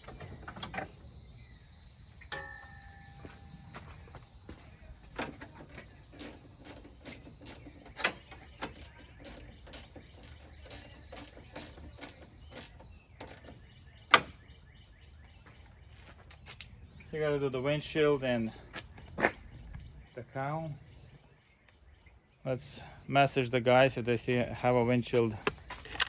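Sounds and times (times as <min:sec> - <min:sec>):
hand tool clicks and knocks: 0:25.4 - 0:26.0.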